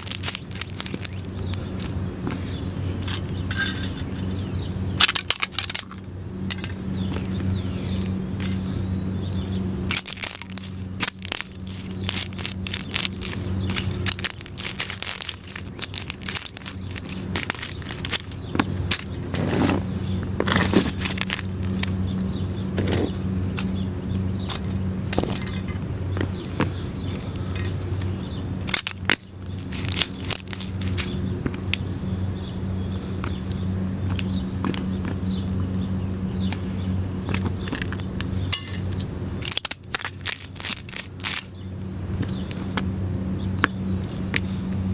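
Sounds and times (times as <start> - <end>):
plastic cups crunching underfoot: 0.0 - 4.3, 5.0 - 6.8, 9.9 - 22.0, 28.7 - 31.2, 39.4 - 41.5
steady low hum: 0.0 - 44.9.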